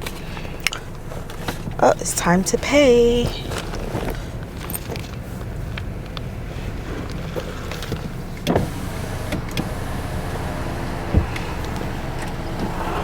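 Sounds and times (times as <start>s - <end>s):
car engine idling: 0.0s - 13.0s
power window motor humming: 8.4s - 13.0s
thump: 11.1s - 11.5s.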